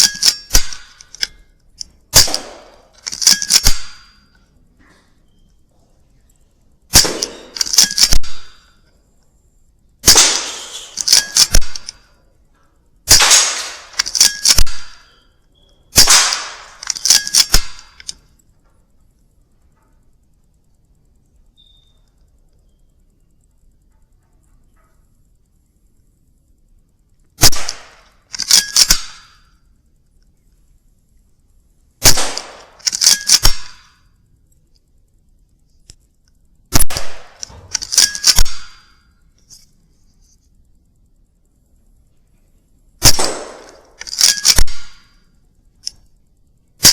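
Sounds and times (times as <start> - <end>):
air rifle shots: 0.0 - 1.0, 2.1 - 4.2, 6.9 - 8.7, 10.0 - 12.0, 13.1 - 15.2, 15.9 - 18.0, 27.4 - 29.4, 32.0 - 33.9, 36.7 - 38.9, 43.0 - 45.1
metallic clicks and clangs: 0.0 - 5.6, 6.3 - 8.9, 10.0 - 19.0, 27.6 - 29.7, 32.4 - 34.7, 37.2 - 39.9, 43.4 - 46.1.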